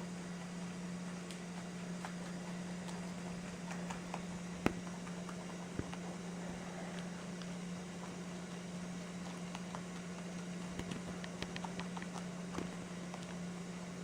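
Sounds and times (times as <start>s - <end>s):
rabbits chewing greens: 0.0s - 14.0s
steady low hum: 0.0s - 14.0s.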